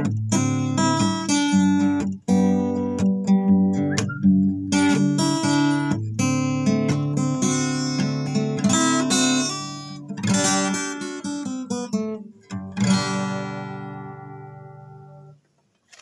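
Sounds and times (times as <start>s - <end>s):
acoustic guitar strumming chords: 0.0s - 15.4s.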